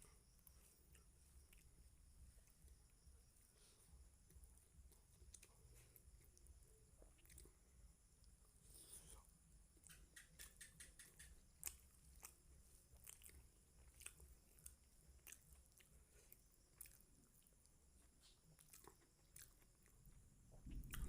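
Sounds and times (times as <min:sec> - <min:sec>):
wet chewing mouth clicks: 0:09.8 - 0:21.0.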